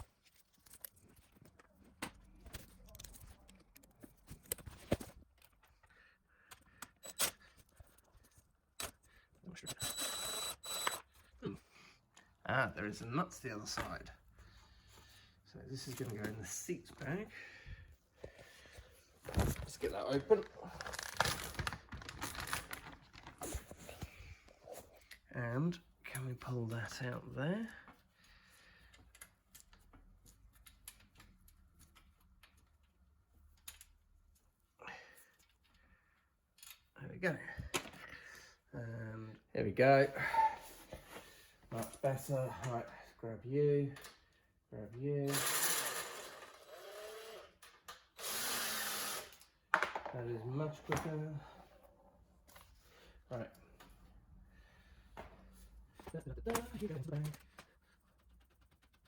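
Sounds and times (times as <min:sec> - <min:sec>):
power driver whirring: 0:09.7 - 0:11.1.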